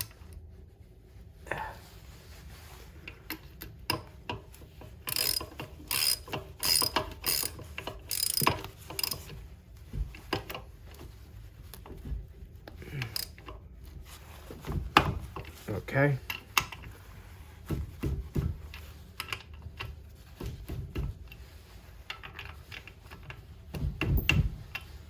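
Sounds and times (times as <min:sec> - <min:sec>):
ratchet wrench clicking: 0:05.0 - 0:09.2.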